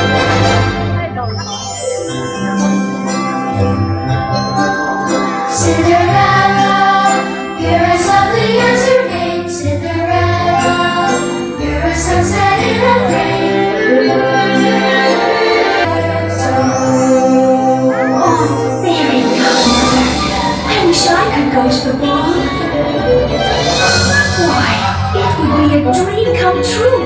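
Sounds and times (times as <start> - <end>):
orchestral music over loudspeakers: 0.0 - 27.0
bells and chimes: 1.2 - 26.4
person singing: 5.6 - 14.5, 15.8 - 21.2.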